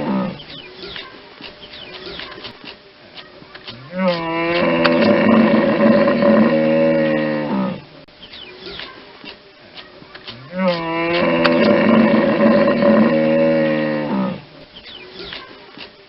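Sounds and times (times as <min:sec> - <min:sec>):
hippopotamus calling: 0:03.7 - 0:08.0, 0:09.9 - 0:14.6.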